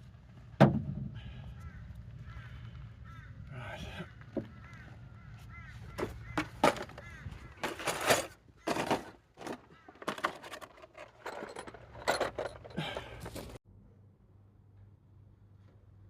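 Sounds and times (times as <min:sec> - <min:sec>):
crow cawing: 0:01.2 - 0:07.6
knocks and clatters: 0:05.9 - 0:13.6.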